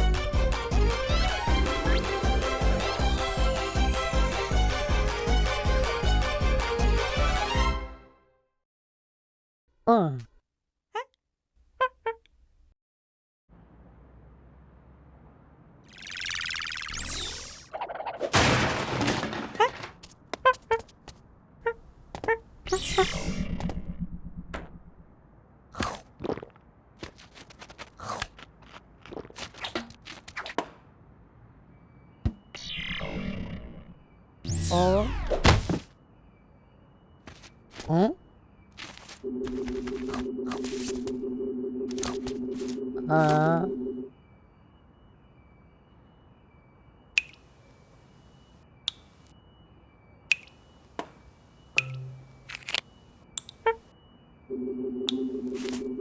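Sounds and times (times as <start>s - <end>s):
faint steady high tone: 40.2s - 56.0s
sharp click: 47.2s - 47.4s, 50.3s - 50.6s.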